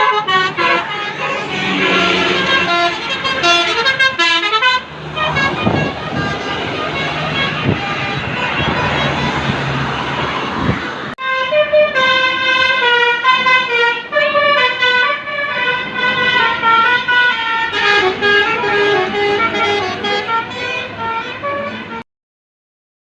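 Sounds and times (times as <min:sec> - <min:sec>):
musical air horn playing a tune: 0:00.0 - 0:09.4, 0:11.2 - 0:22.0.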